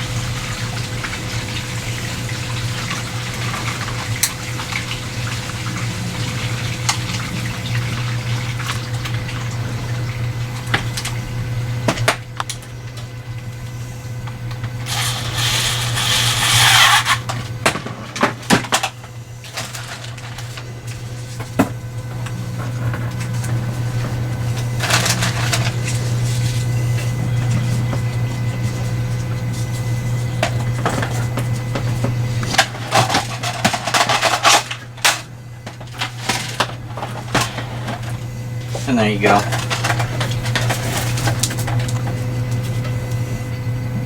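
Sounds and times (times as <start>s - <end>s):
steady low hum: 5.0s - 44.0s
loud rasping hiss: 14.9s - 17.2s.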